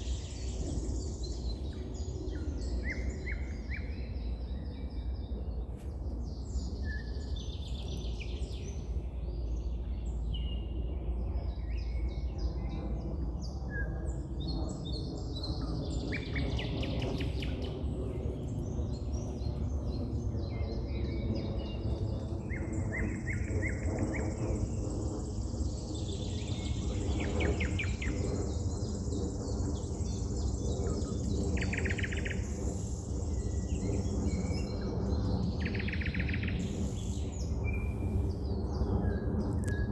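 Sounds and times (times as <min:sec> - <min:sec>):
steady low rumble: 0:00.0 - 0:39.9
birds chirping and trilling: 0:15.2 - 0:39.9.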